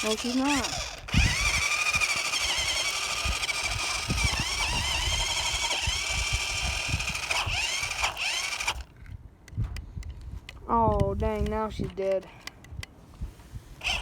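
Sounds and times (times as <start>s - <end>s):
electric motor and gears whining: 0.0s - 8.9s, 13.8s - 14.0s.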